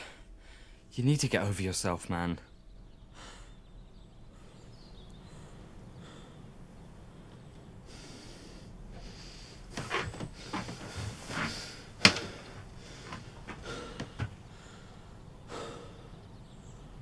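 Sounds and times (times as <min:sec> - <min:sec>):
irregular knocks and clicks: 0:09.7 - 0:14.4.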